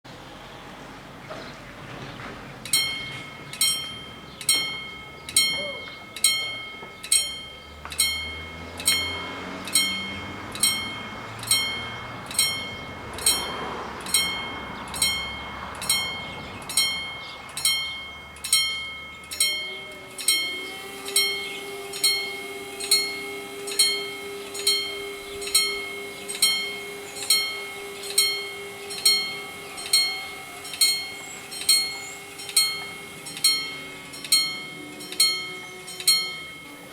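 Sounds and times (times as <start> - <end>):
vehicle passing: 0.1 - 36.9
level crossing bells striking: 2.6 - 36.9
steady hum: 2.6 - 36.9.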